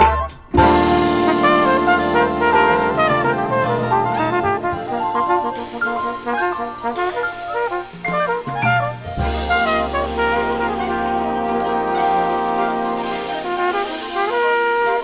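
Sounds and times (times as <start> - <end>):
big band jazz with brass: 0.0 - 15.0.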